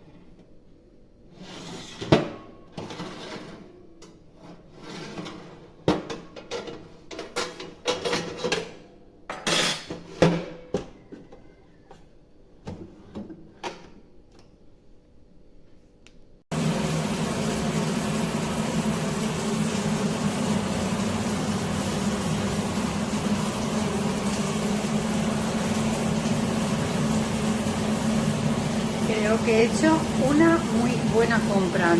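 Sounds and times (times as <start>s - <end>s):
kitchen items knocking and clattering: 5.8s - 11.3s.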